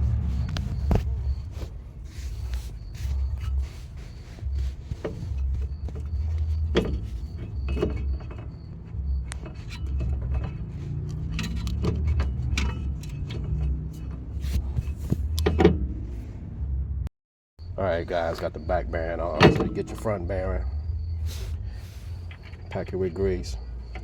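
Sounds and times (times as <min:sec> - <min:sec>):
low uneven rumble: 0:00.0 - 0:24.0
metal parts clinking: 0:00.5 - 0:15.6.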